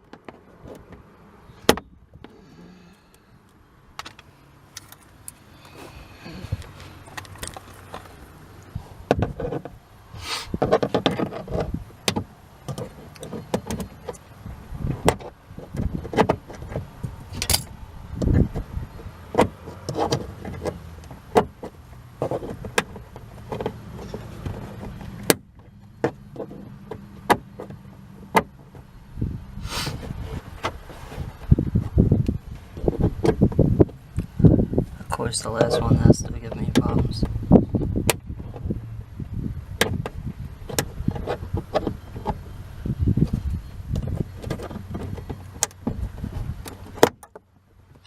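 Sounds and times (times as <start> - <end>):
tool clicking and scraping plastic: 10.5 - 14.2, 19.3 - 28.8, 39.8 - 42.5.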